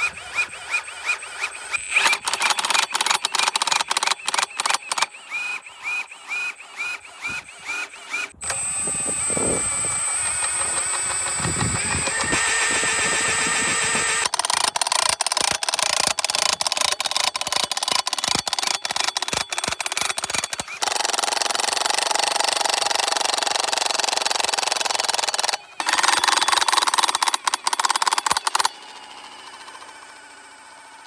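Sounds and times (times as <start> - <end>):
impact wrench hammering: 6.9 - 22.3, 22.9 - 28.8.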